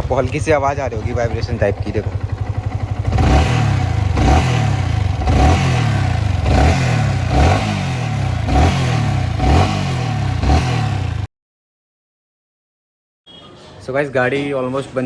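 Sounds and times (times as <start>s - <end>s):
motorcycle engine revving: 0.0s - 11.3s.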